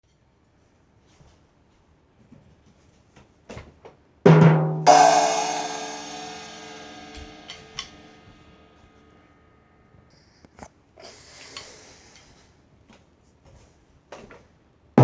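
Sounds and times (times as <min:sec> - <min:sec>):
drum hit: 0:04.8 - 0:07.9
cymbal crash ringing: 0:04.9 - 0:08.4.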